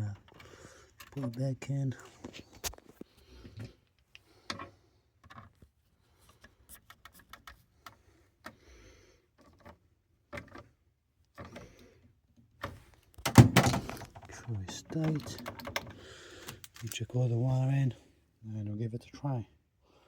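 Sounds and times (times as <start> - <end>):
wire connectors clicking: 13.1 - 17.1.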